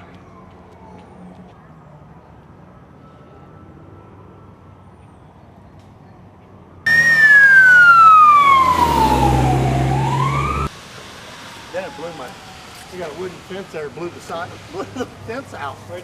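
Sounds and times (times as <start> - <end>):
faint distant siren: 0.0 - 5.7, 6.9 - 14.4
emergency siren wailing: 6.9 - 13.6
vehicle engine drone: 6.9 - 15.2.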